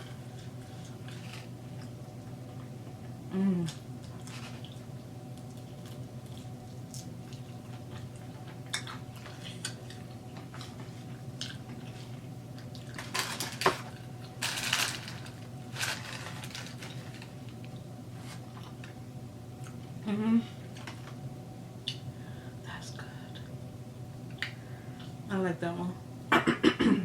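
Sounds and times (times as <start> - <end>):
steady low hum: 0.0 - 27.0
chewing food: 4.0 - 13.1.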